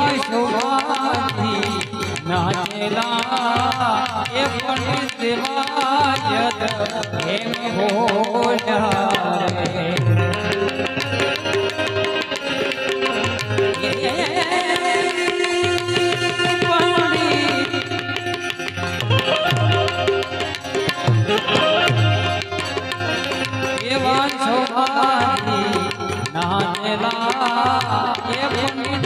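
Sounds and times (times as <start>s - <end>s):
harmonium melody: 0.0s - 29.0s
tabla strokes: 0.0s - 29.0s.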